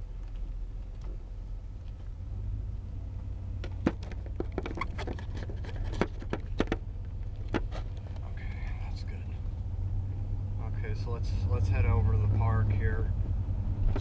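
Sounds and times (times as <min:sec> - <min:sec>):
car engine rumble inside cabin: 0:00.0 - 0:14.0
irregular clicks and knocks: 0:03.6 - 0:08.2.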